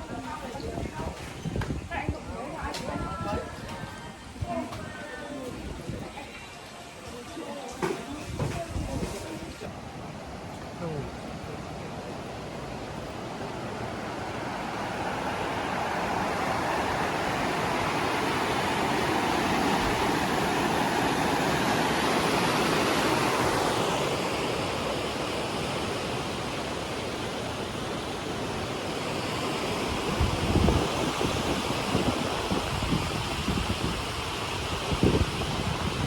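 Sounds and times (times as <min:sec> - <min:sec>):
stream and waterfall rushing: 0:09.3 - 0:36.0.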